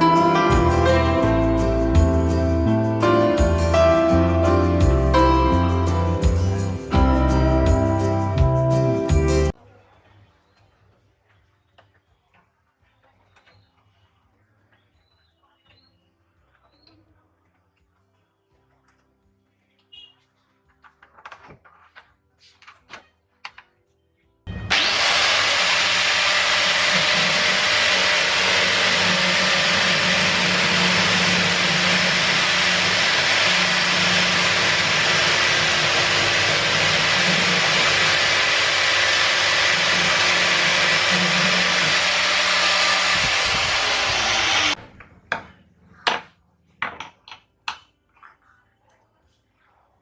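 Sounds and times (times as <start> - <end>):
electric power tool running: 24.5 - 44.8.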